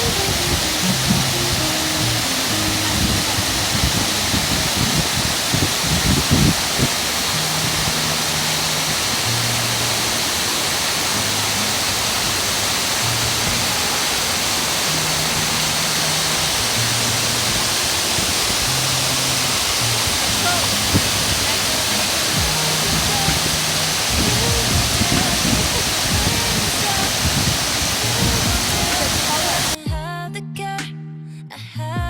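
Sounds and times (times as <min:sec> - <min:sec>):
mountain stream rushing: 0:00.0 - 0:29.8
soft background music: 0:00.0 - 0:32.0
low bumps: 0:16.8 - 0:29.8.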